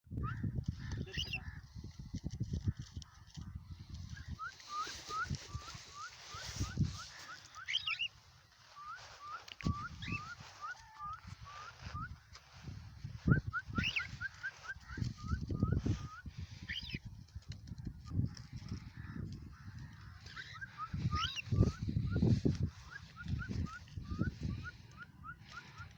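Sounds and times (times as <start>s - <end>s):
cockatiels chirping: 0.8s - 1.6s, 4.1s - 17.0s, 19.0s - 25.9s.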